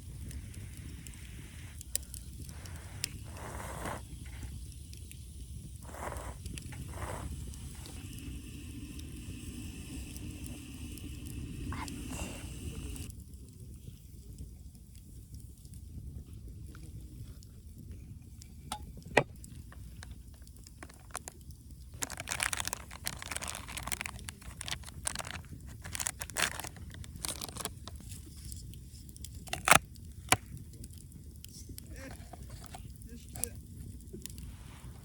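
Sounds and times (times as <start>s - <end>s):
low steady rumble: 0.0s - 13.2s
campfire crackling and popping: 0.0s - 35.0s.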